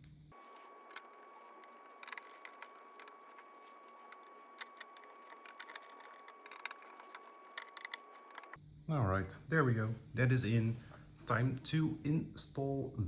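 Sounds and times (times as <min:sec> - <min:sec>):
protective film peeling: 0:00.0 - 0:08.6.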